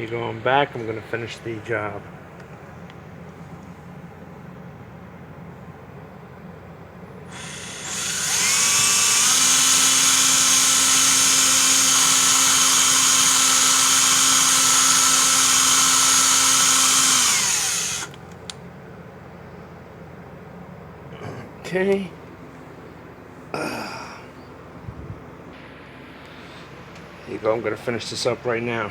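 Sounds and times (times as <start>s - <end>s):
cordless drill whining: 7.3s - 18.2s.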